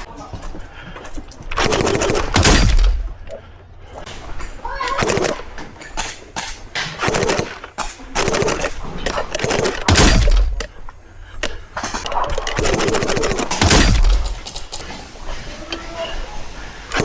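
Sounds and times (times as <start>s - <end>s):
automatic gunfire bursts: 1.6s - 3.1s, 4.9s - 5.5s, 7.0s - 10.7s, 12.2s - 14.8s.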